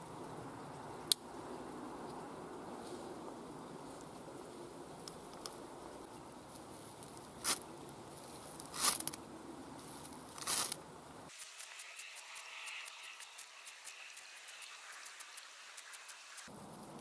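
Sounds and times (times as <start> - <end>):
wire stripper scraping ferrocerium rod: 10.4 - 16.5.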